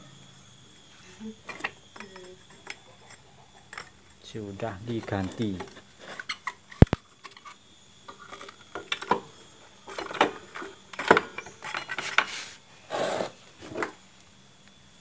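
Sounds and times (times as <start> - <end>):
metal tools clinking: 1.4 - 12.6.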